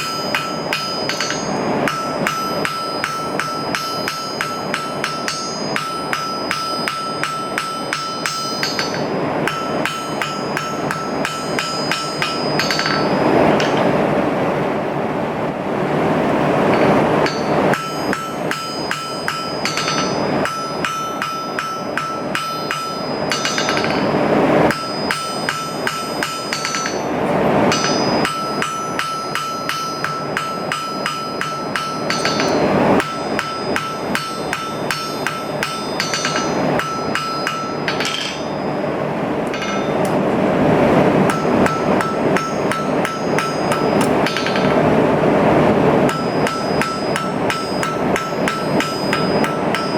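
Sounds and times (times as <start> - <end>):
hammer on metal anvil: 0.0 - 14.0, 16.7 - 38.6, 39.4 - 40.2, 41.2 - 44.9, 46.1 - 49.9
steady rushing noise: 0.0 - 49.9.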